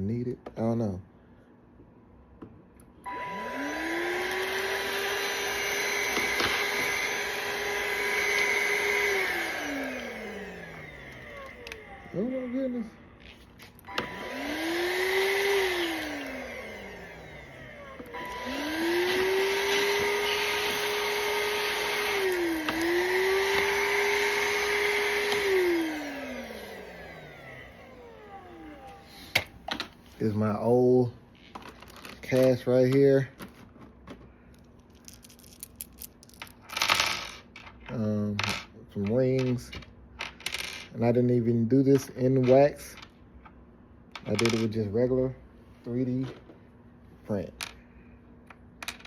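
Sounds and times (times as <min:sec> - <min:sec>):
small electric motor whining: 0:03.1 - 0:29.6.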